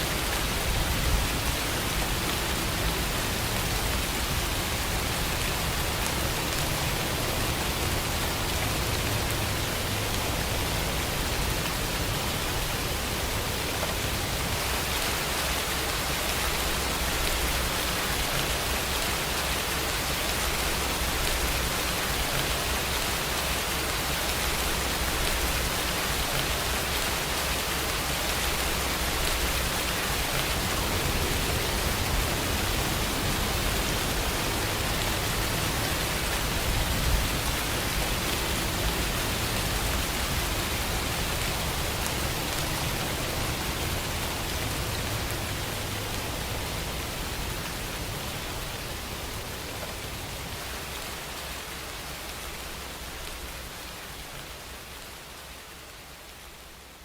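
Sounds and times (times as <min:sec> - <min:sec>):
steady rain hiss: 0:00.0 - 0:57.0.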